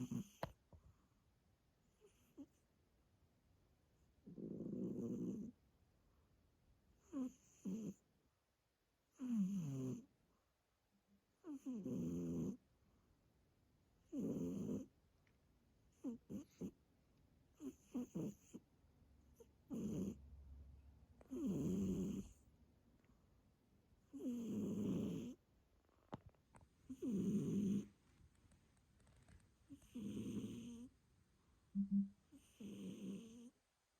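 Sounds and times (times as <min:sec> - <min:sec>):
cat snoring: 0:00.0 - 0:00.5, 0:01.9 - 0:02.6, 0:04.2 - 0:05.6, 0:07.0 - 0:08.0, 0:09.1 - 0:10.1, 0:11.4 - 0:12.6, 0:14.0 - 0:14.9, 0:15.9 - 0:16.8, 0:17.5 - 0:18.6, 0:19.4 - 0:20.2, 0:21.2 - 0:22.4, 0:24.1 - 0:25.4, 0:26.9 - 0:27.9, 0:29.7 - 0:30.9, 0:32.3 - 0:33.5.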